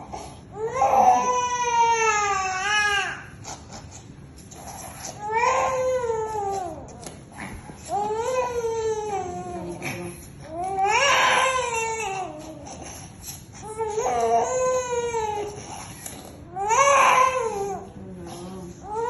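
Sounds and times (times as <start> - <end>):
infant crying: 0.0 - 3.3, 7.9 - 12.8, 16.5 - 17.9.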